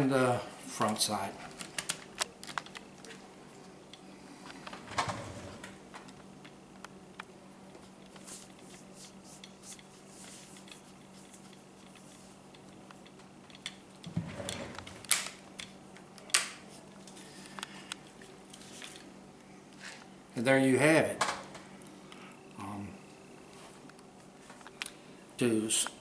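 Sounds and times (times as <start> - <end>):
faint steady hum: 0.0 - 26.0
small clicks and scraping: 0.8 - 20.1.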